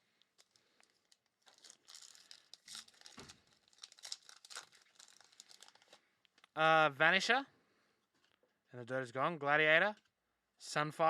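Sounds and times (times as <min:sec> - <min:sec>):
foil wrapper crinkling and tearing: 0:00.2 - 0:06.5.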